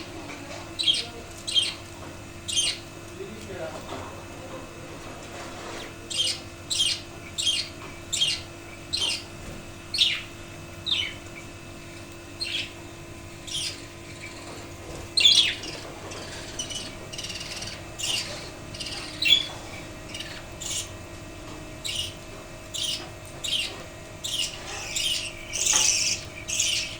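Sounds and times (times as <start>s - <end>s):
faint steady hum: 0.0s - 26.9s
budgerigars chirping: 0.8s - 1.8s, 2.4s - 2.8s, 5.8s - 9.3s, 9.9s - 11.5s, 12.4s - 12.8s, 13.4s - 21.0s, 21.8s - 26.9s.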